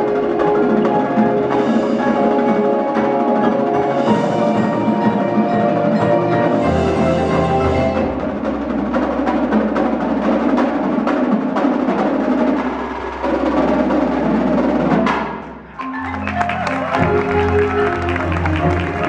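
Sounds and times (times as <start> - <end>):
drum strikes: 0.0 - 19.0
marimbas: 0.0 - 19.0
wood-block strikes: 15.0 - 19.0
held chords: 15.7 - 19.0.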